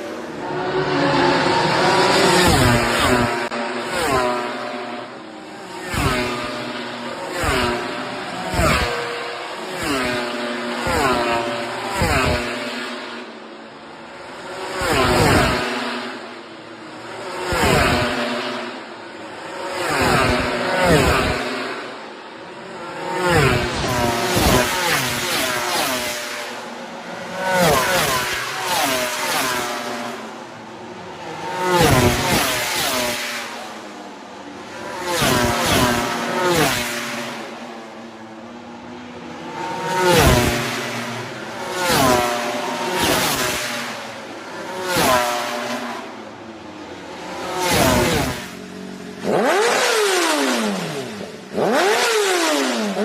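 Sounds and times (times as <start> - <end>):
racing motorcycles passing: 0.0 - 53.0
motorcycle passing by: 22.8 - 30.6, 31.4 - 33.8, 39.5 - 46.2.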